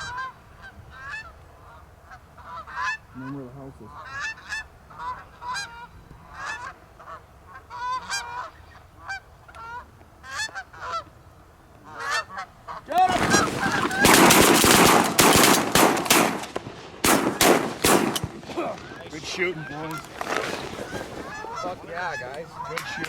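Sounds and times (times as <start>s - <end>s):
goose honking: 0.0s - 11.1s, 11.8s - 14.5s, 18.8s - 23.0s
shotgun blasts: 13.1s - 18.8s.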